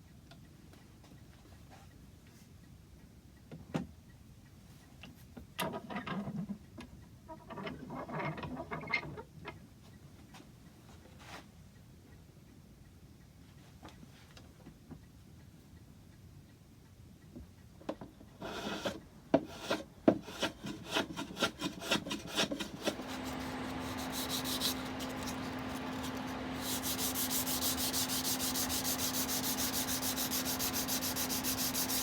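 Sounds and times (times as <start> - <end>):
rasping strokes on wood: 18.4 - 32.0
sanding wood: 19.5 - 32.0
steady hum: 22.1 - 32.0.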